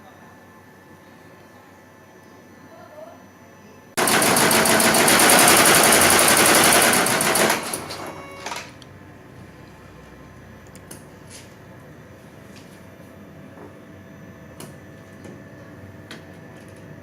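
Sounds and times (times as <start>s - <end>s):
embroidery machine stitching: 4.0s - 8.7s.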